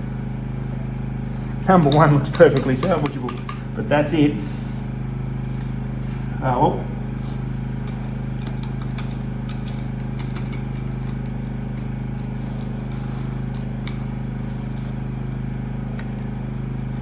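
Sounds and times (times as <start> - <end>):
low machine hum: 0.0 - 17.0.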